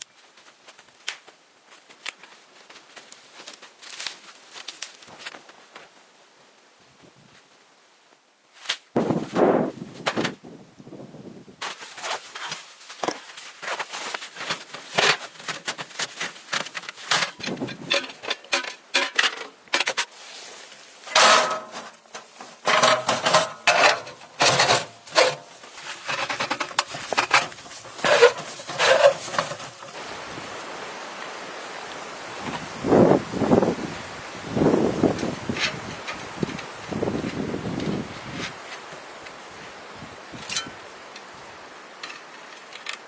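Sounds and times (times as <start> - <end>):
knocks and crunches: 21.0 - 30.0
wind hissing: 29.8 - 42.0.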